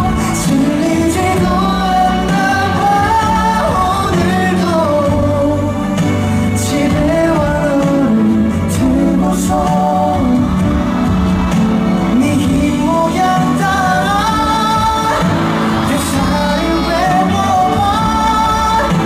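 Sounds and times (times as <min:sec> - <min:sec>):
instrumental backing: 0:00.0 - 0:19.0
pop song singing: 0:00.0 - 0:19.0.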